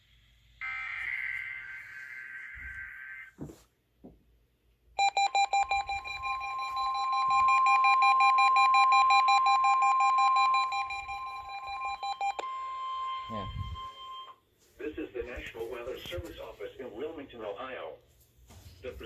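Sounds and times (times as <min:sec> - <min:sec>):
loud steady high alarm tone: 0:00.6 - 0:03.5, 0:05.0 - 0:14.4
alert receivers beeping rapidly: 0:05.0 - 0:14.3.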